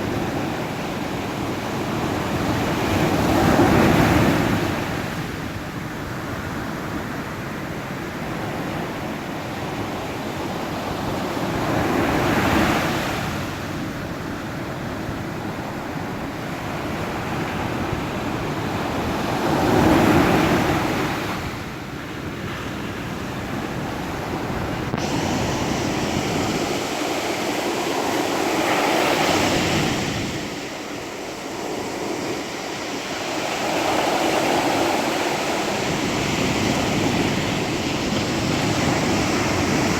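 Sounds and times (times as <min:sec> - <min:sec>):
ocean waves breaking on shore: 0:00.0 - 0:39.9.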